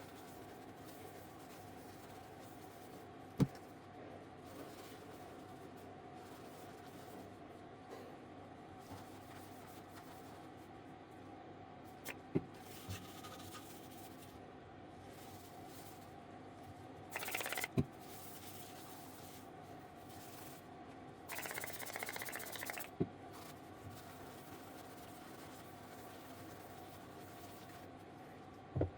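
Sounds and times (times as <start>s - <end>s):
sharp clicks: 17.2s - 17.7s, 21.3s - 22.9s
sputtering spray hiss: 21.3s - 22.9s.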